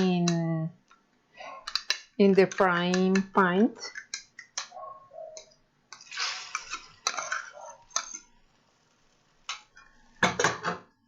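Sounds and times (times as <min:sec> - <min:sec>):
utensil scraping a bowl and pan: 0:05.9 - 0:08.4.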